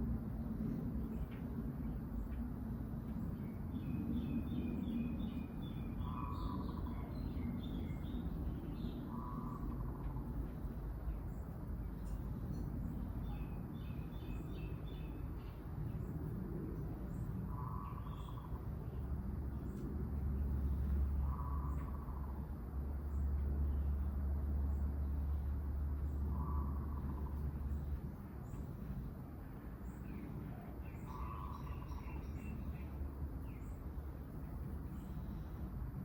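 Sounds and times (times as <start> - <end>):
low background rumble: 0.0 - 36.0
lower bird call: 5.8 - 8.1, 8.8 - 10.4, 17.5 - 18.6, 20.6 - 22.5, 26.3 - 27.9, 30.5 - 32.9.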